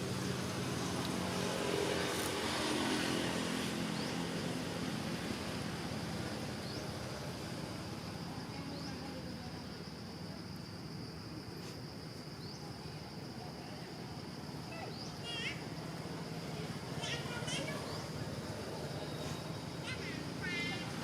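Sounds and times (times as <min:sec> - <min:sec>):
motor vehicle passing: 0:00.0 - 0:07.9, 0:15.0 - 0:21.0
high insect trill: 0:00.0 - 0:21.0.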